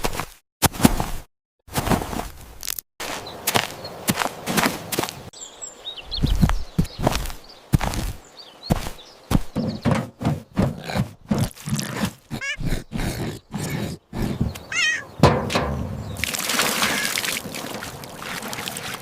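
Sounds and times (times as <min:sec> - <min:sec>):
soft thumps: 0:06.2 - 0:12.1, 0:15.2 - 0:16.2
kitten mewing: 0:12.3 - 0:12.9, 0:14.7 - 0:15.1
water pouring from watering can: 0:16.1 - 0:19.0.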